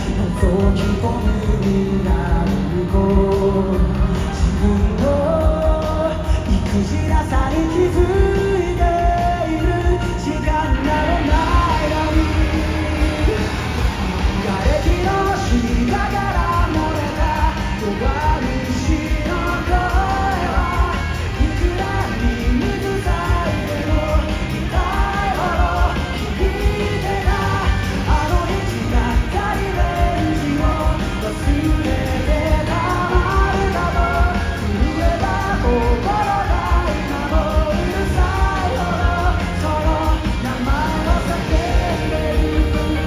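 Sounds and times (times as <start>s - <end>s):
live pop-rock band: 0.0s - 43.0s
person singing: 0.0s - 43.0s.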